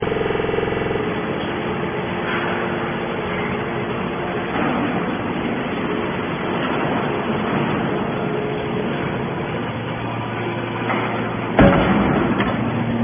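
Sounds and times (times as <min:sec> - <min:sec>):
noisy machine rumble: 0:00.0 - 0:13.0
steady machine hum: 0:00.0 - 0:13.0.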